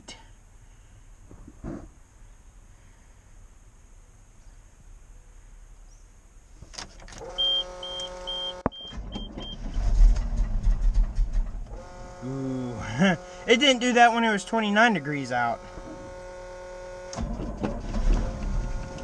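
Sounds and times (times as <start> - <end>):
truck engine cranking: 6.7 - 19.0
short electronic beeps: 7.4 - 9.7
steady tone: 11.9 - 17.0.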